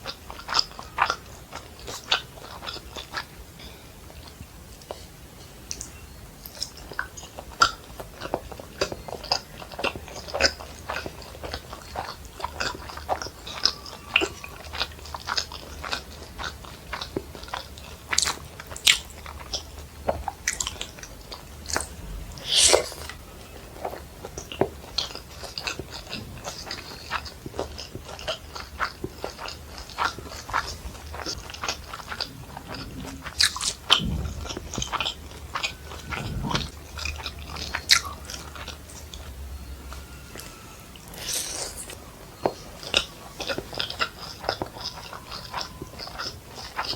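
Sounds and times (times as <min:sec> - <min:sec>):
person chewing food: 0:00.0 - 0:05.0, 0:05.7 - 0:46.9
crunchy bites: 0:21.7 - 0:23.2, 0:40.4 - 0:42.0.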